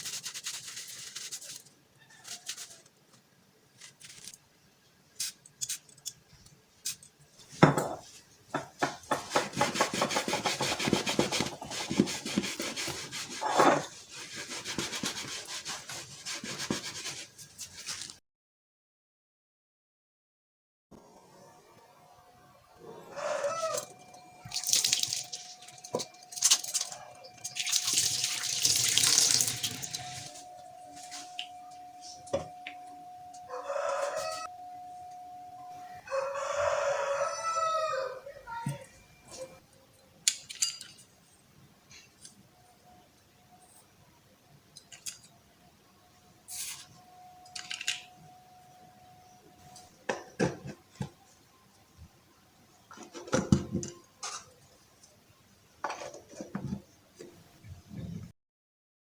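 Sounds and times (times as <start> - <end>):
faint steady hum: 21.0 - 40.2
chicken calling: 22.8 - 24.0, 33.4 - 34.6, 35.7 - 38.9
tap water running: 23.8 - 30.4.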